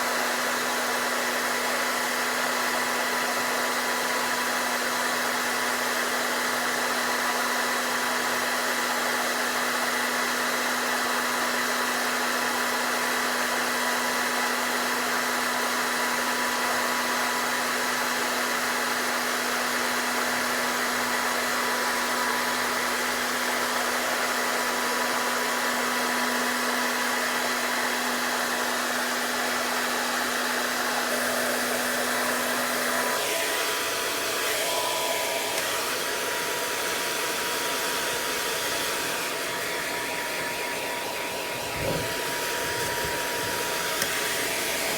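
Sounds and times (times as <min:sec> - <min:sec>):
hair dryer blowing: 0:00.0 - 0:44.9.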